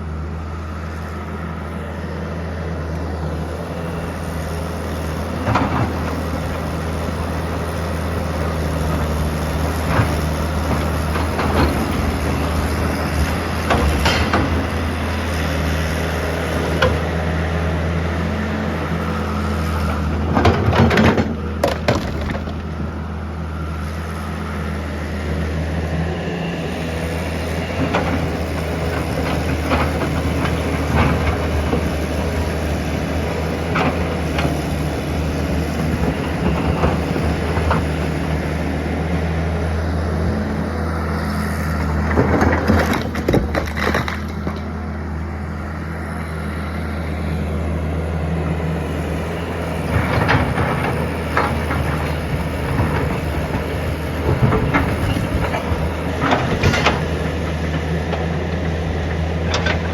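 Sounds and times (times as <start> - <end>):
large engine droning: 0.0 - 59.9
knocks and clanks: 20.3 - 22.7.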